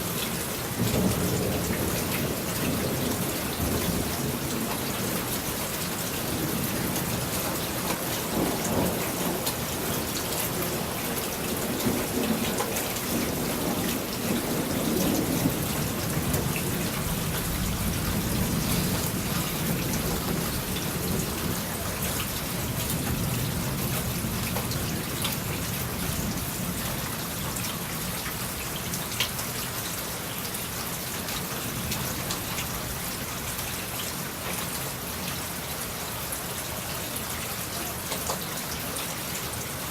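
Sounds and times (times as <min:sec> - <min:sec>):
steady rain: 0:00.0 - 0:39.9
thunder rumbling: 0:00.7 - 0:27.1.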